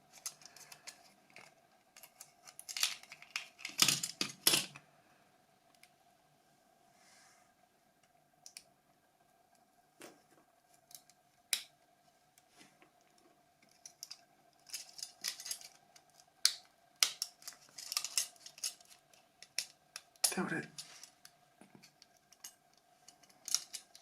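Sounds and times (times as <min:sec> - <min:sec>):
faint steady hum: 0:00.0 - 0:24.0
phone parts clicking: 0:00.1 - 0:04.8, 0:13.7 - 0:21.1, 0:21.8 - 0:24.0.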